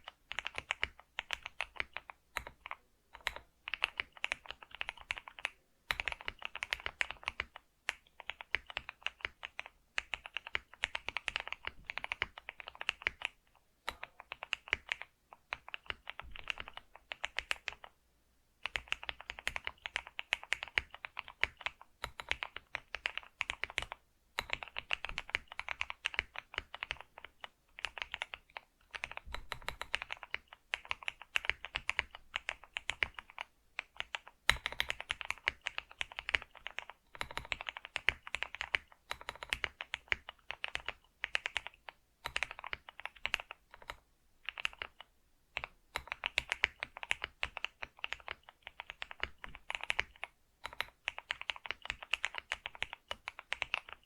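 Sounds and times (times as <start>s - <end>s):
typing on computer keyboard: 0.0s - 18.0s, 18.6s - 54.0s.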